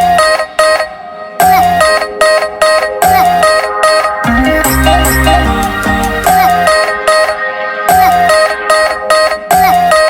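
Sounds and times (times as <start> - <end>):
electronic synth music: 0.0 - 10.0.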